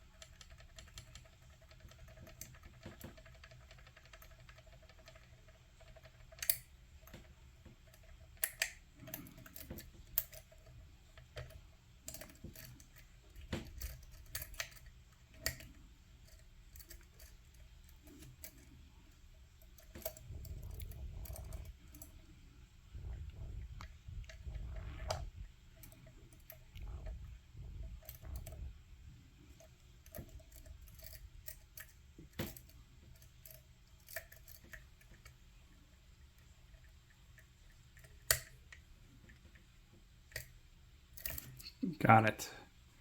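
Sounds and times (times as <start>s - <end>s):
lock pick clicking in a lock: 0.2s - 7.2s, 7.9s - 18.7s, 29.6s - 35.4s, 37.4s - 39.6s, 41.2s - 41.7s
dull handling noise: 0.9s - 35.3s.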